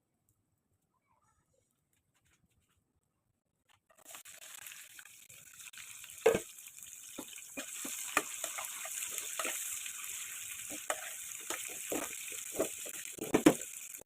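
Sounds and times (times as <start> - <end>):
food sizzling in pan: 4.0 - 14.0.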